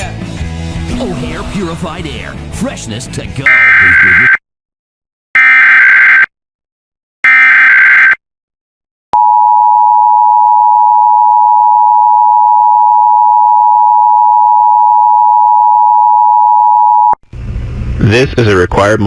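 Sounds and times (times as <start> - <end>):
loud steady alert tone: 3.4 - 4.4.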